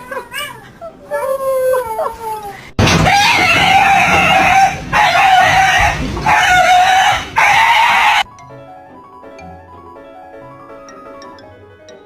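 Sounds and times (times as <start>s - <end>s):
dog screaming: 3.0s - 8.3s.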